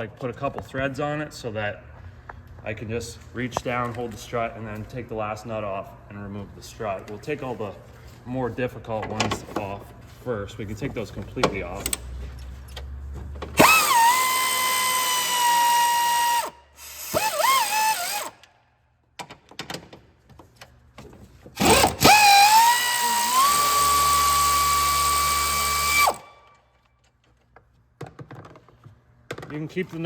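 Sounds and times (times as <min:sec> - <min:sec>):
power tool motor whine: 0:13.6 - 0:18.4, 0:21.6 - 0:26.4.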